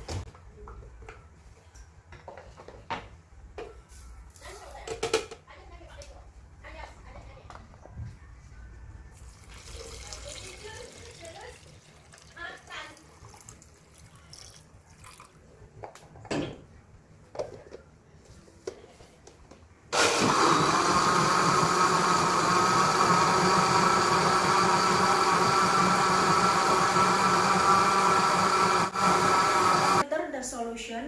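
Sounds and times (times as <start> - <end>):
electric blender motor running: 20.0 - 30.0.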